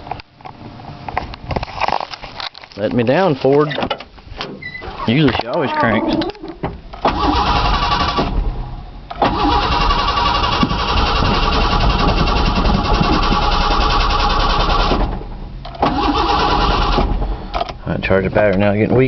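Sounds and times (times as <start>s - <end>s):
engine starter cranking: 6.9s - 8.5s, 9.1s - 17.7s.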